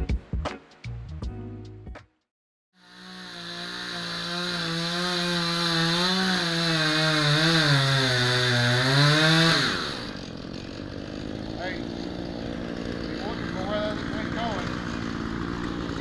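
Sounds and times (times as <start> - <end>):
chainsaw cutting into tree: 2.8 - 16.0.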